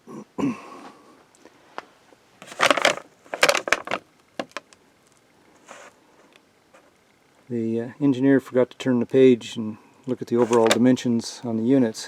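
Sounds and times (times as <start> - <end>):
paper rustling and crinkling: 2.4 - 4.6, 10.4 - 10.8.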